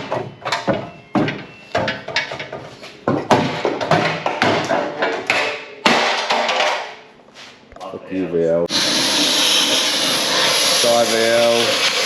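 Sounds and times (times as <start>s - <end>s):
metal bangs and clanks: 0.0s - 7.0s.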